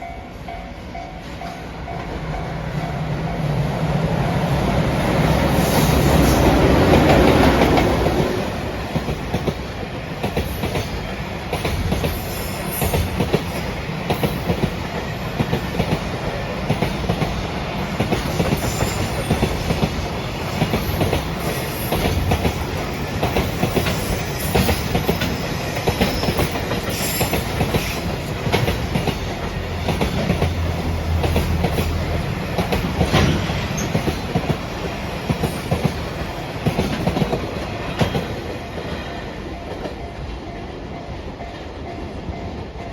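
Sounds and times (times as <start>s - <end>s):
electric locomotive passing: 0.0s - 42.9s
wheels clacking over rail joints: 6.0s - 40.2s.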